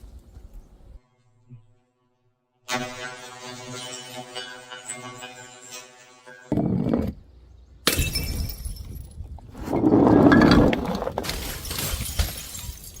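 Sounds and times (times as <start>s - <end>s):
glass breaking: 7.9s - 9.0s, 10.4s - 13.0s
glass fragments clattering: 10.4s - 13.0s.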